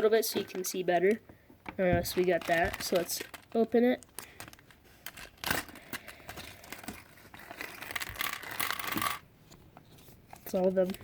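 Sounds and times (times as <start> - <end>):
packaging crinkling and tearing: 2.1 - 9.2.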